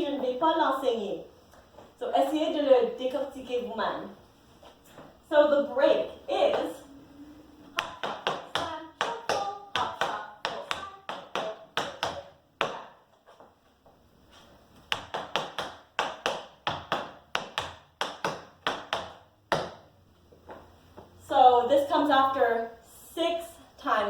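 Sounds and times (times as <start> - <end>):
tap shoes striking floor: 7.8 - 14.0, 14.9 - 21.1.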